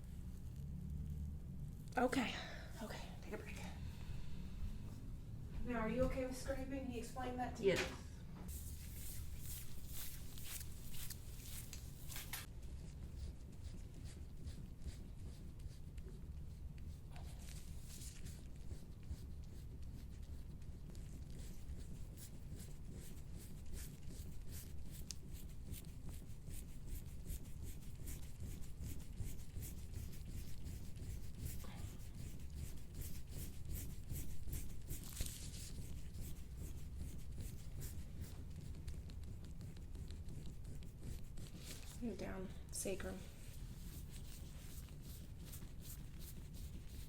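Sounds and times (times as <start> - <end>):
scraping tool on skin: 8.5 - 12.5.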